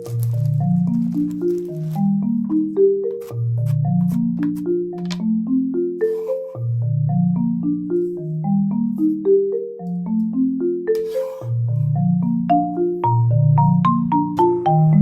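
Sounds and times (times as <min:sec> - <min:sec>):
bouncy mallet melody: 0:00.0 - 0:15.0.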